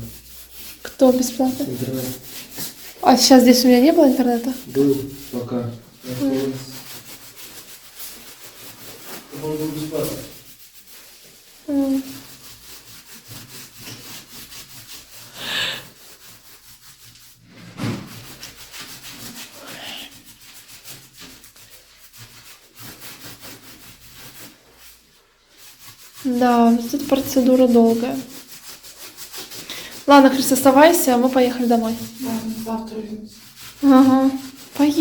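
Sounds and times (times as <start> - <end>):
scraping on tile: 0.0 - 35.0.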